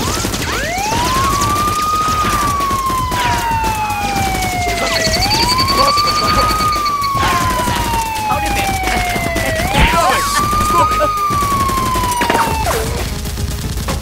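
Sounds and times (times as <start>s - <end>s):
police siren wailing: 0.0s - 13.2s
high beeping: 2.4s - 12.7s.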